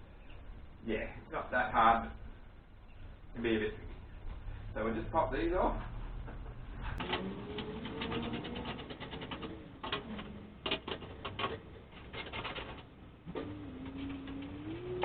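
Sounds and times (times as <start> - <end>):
sharp clicks and metallic rattles: 7.0 - 15.0
drill motor whine: 13.3 - 15.0.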